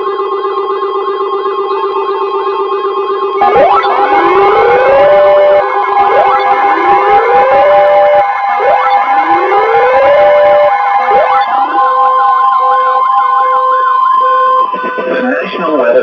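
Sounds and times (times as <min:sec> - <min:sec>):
rising siren-like alert sweeps: 0:03.3 - 0:15.8
steady alert tones: 0:03.4 - 0:13.2.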